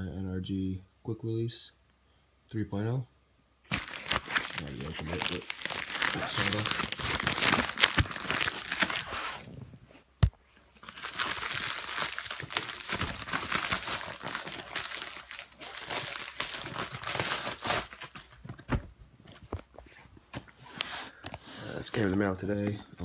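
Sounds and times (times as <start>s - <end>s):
wrapping crinkling and rustling: 3.7s - 9.6s, 10.4s - 21.2s.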